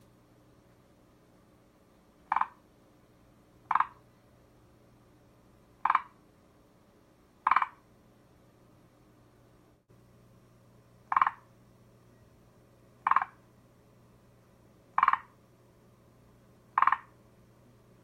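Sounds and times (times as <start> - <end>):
tree frog croaking: 2.2 - 2.6, 3.6 - 4.1, 5.8 - 6.2, 7.4 - 7.8, 11.1 - 11.5, 13.0 - 13.4, 14.9 - 15.4, 16.7 - 17.2.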